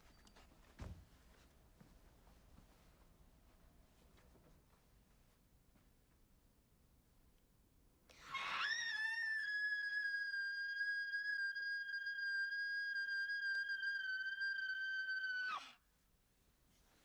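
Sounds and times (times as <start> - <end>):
shrill piercing shriek: 8.1 - 15.8.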